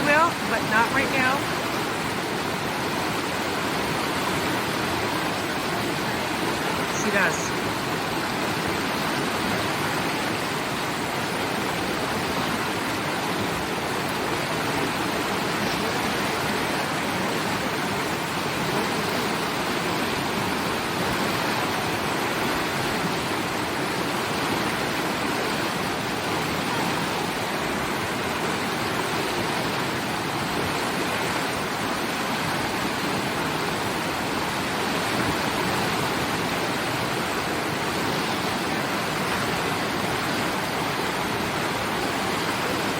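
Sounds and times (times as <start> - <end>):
river water rushing: 0.0 - 42.9.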